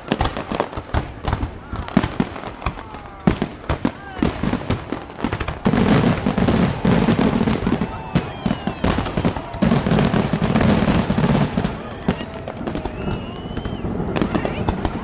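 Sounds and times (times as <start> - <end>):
fireworks bangs and crackling: 0.0 - 15.0
fireworks rising whistles: 5.6 - 15.0.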